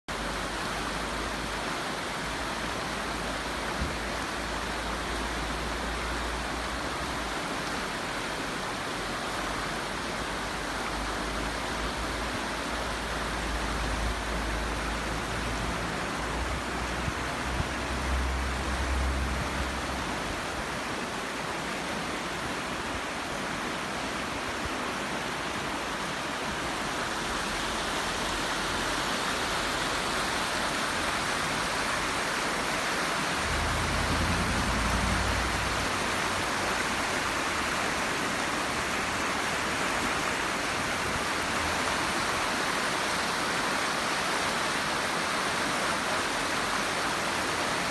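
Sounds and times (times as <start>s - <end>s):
train rushing and rumbling: 33.2s - 37.6s.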